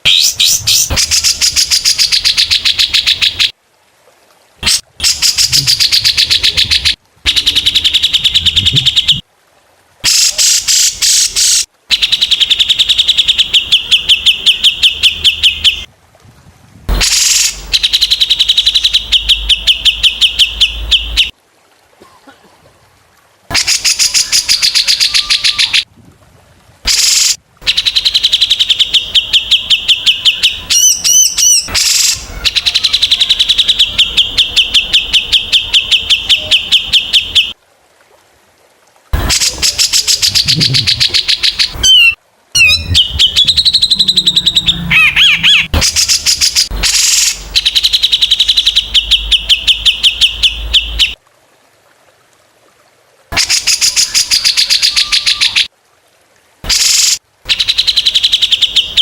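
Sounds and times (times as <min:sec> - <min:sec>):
songbirds calling rapidly: 0:17.0 - 0:21.3, 0:39.2 - 0:51.2.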